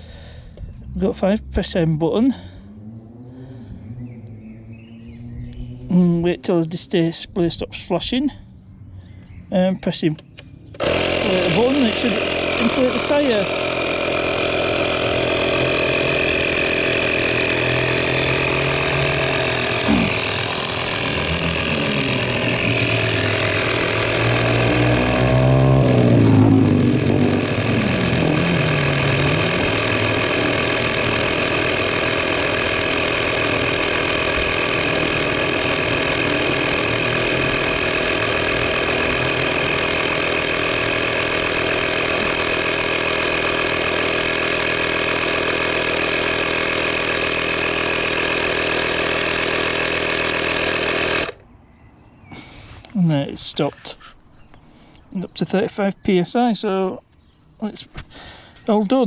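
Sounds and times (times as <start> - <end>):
tyre inflator compressor running: 0.0 - 0.6, 10.3 - 51.4.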